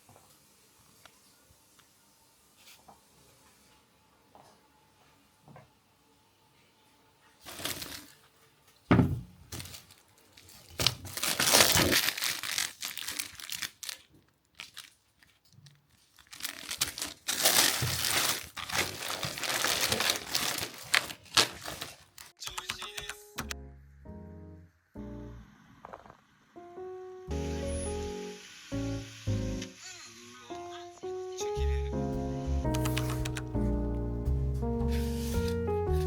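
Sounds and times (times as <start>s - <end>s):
packaging crinkling: 7.4s - 8.3s, 9.4s - 22.7s, 32.7s - 33.6s.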